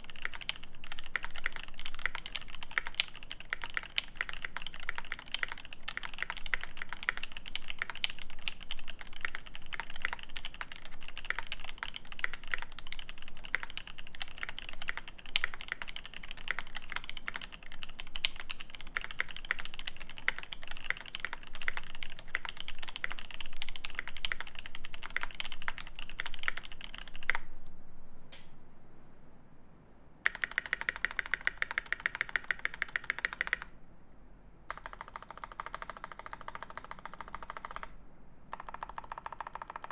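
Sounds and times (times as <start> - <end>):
fast typing on mechanical keyboard: 0.0 - 27.5, 30.3 - 33.7, 34.7 - 39.9
sharp click: 28.3 - 28.6.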